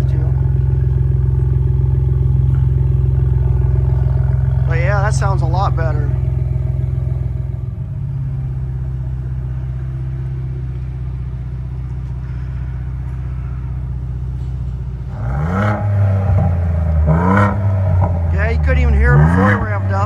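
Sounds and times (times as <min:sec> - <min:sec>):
engine revving: 0:00.0 - 0:07.7, 0:15.1 - 0:20.0
car engine idling: 0:00.0 - 0:20.0.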